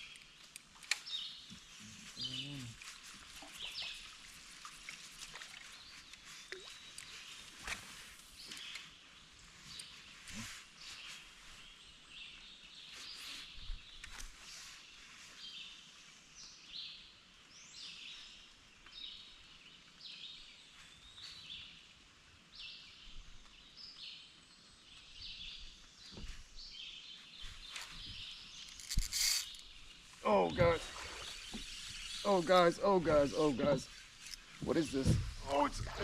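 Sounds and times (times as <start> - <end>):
birds chirping: 25.0 - 36.0.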